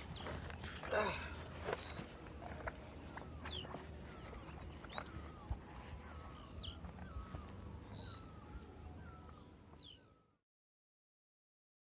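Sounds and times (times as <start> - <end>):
lower wavering bird calls: 3.0 - 10.4.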